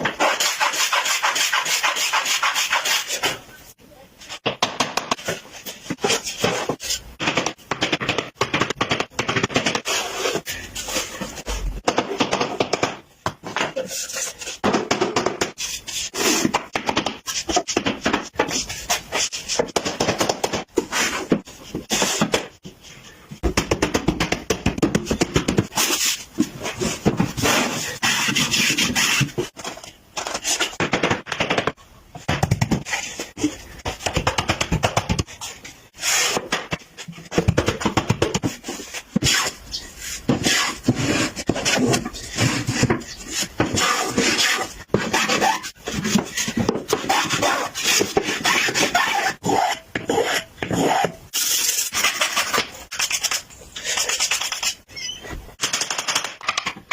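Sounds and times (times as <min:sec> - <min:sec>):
hand tools scraping wood: 0:00.0 - 0:03.4, 0:38.2 - 0:55.2.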